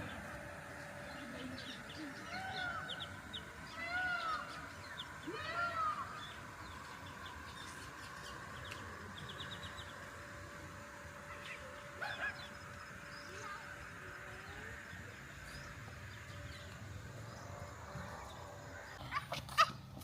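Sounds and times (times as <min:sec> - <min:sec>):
small birds chirping: 0:00.0 - 0:19.2.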